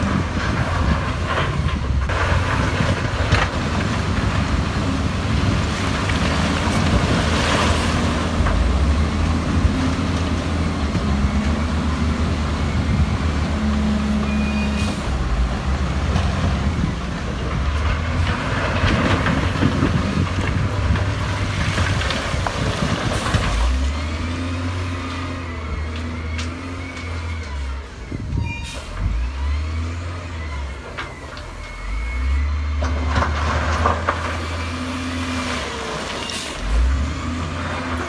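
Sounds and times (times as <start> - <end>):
diesel engine drone: 0.0 - 38.0.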